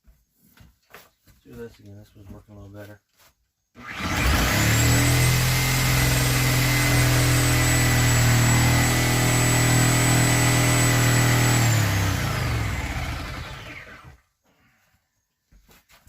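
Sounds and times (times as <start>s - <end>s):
electric power saw whining: 3.8s - 14.2s
power saw winding down: 3.8s - 14.2s.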